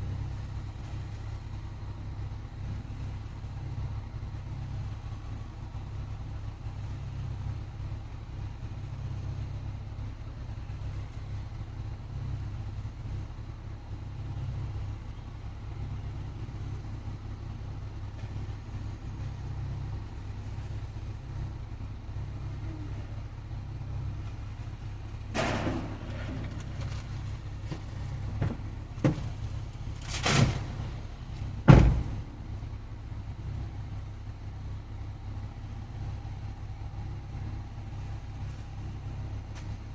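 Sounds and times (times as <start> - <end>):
steady low rumble: 0.0 - 39.9
knocks and bangs: 31.6 - 32.3.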